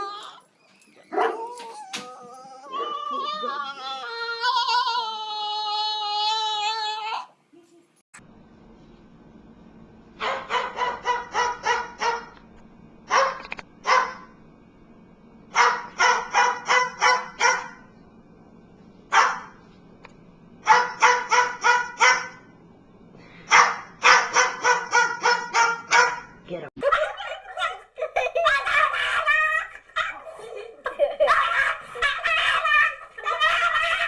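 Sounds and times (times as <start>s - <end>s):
dog barking: 1.1s - 1.5s, 10.2s - 12.3s, 13.1s - 14.3s, 15.6s - 17.8s, 19.1s - 19.6s, 20.6s - 22.4s, 23.5s - 26.4s.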